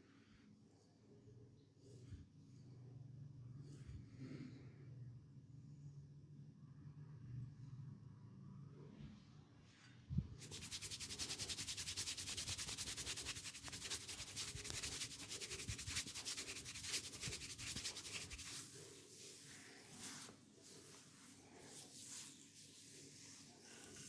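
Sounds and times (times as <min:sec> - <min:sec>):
hands rubbing skin: 0:10.4 - 0:19.4.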